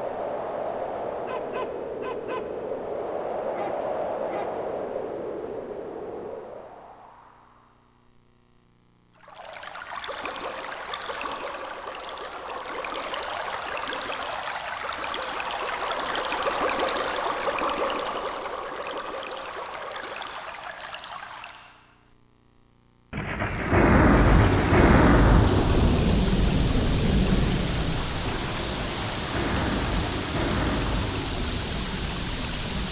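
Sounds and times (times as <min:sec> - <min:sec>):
crackling hiss: 0:00.0 - 0:32.9
thunder effect rumble: 0:23.2 - 0:32.9.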